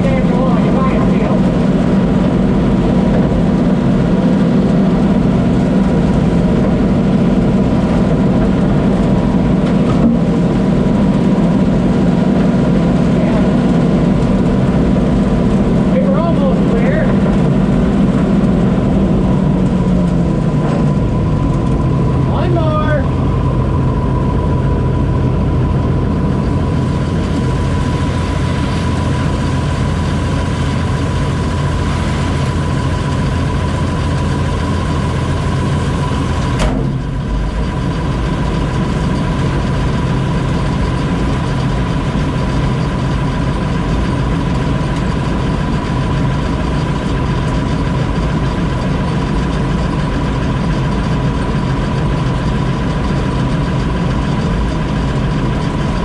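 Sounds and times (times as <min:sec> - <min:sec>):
combine harvester drone: 0:00.0 - 0:56.0.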